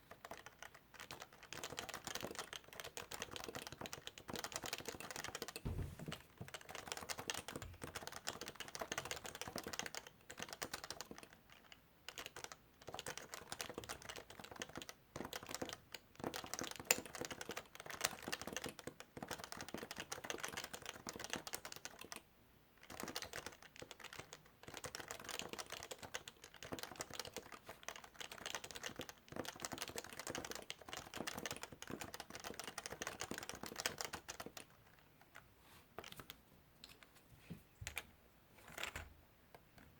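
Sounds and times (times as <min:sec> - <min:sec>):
fast keyboard typing: 0:00.0 - 0:22.2, 0:22.8 - 0:35.4.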